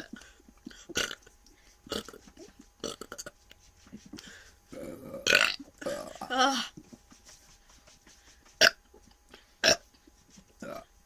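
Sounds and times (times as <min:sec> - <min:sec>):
person belching: 0:00.9 - 0:01.3, 0:02.8 - 0:03.3, 0:04.7 - 0:06.7, 0:09.6 - 0:09.8, 0:10.6 - 0:10.9.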